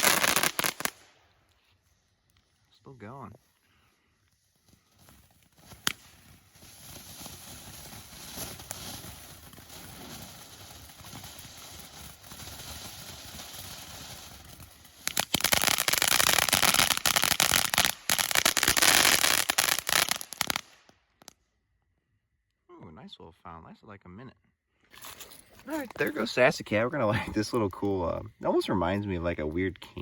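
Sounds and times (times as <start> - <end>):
firework fountain hissing and crackling: 0.0 - 21.4.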